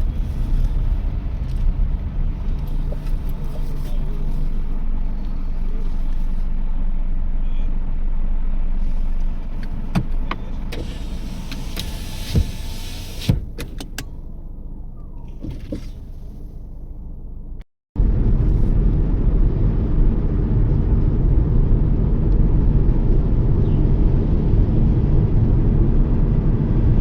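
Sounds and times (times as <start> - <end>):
car engine and road rumble: 0.0 - 27.0.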